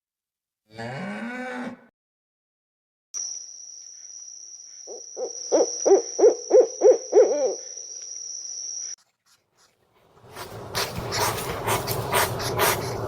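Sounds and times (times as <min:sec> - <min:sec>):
insect high-pitched trill: 0:03.2 - 0:09.0
owl hooting: 0:04.0 - 0:09.0.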